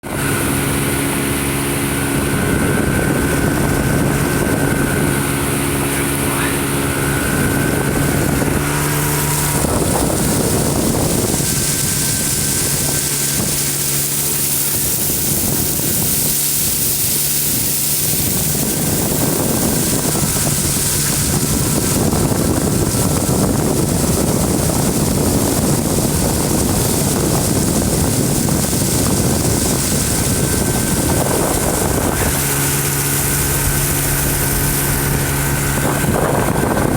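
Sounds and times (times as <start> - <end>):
vehicle engine running: 0.0 - 36.9
wind: 0.0 - 36.9.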